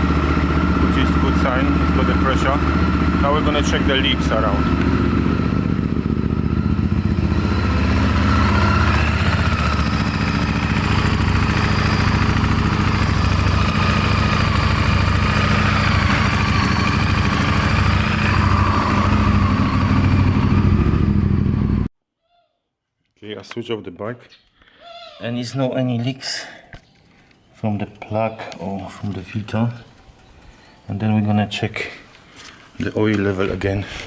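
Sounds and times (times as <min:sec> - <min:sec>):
motorcycle engine idling: 0:00.0 - 0:21.9, 0:27.0 - 0:34.0.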